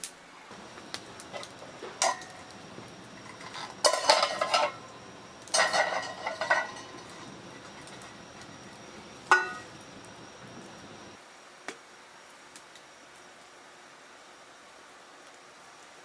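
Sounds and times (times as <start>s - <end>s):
metal cookware clattering: 0.5s - 11.2s.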